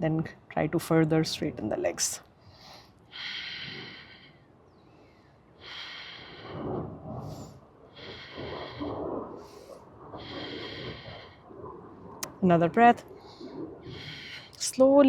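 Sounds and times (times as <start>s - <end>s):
person breathing audibly: 2.6s - 11.5s, 13.3s - 14.6s.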